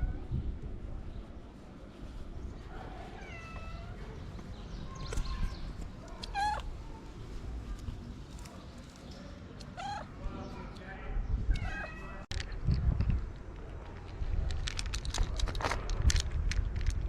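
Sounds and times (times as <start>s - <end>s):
cat meowing: 3.1s - 4.0s, 6.2s - 6.7s, 9.8s - 10.1s, 11.5s - 12.3s.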